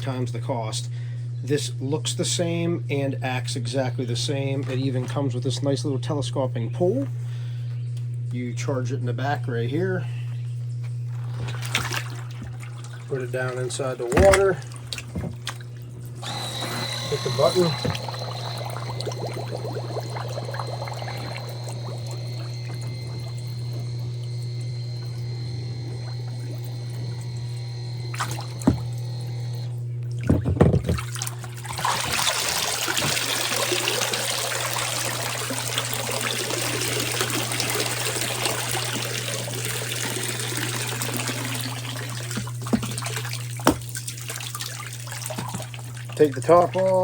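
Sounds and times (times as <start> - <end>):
pool vacuum motor hum: 0.0 - 47.0
water pouring and splashing: 11.1 - 29.4, 30.1 - 47.0.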